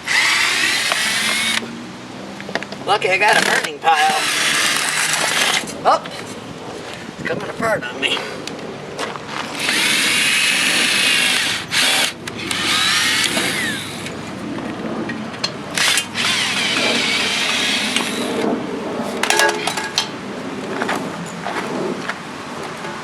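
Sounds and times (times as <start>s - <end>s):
power tool squealing: 0.0s - 1.7s, 3.3s - 5.7s, 9.5s - 14.2s, 15.8s - 18.5s
metal clanks: 19.2s - 20.2s.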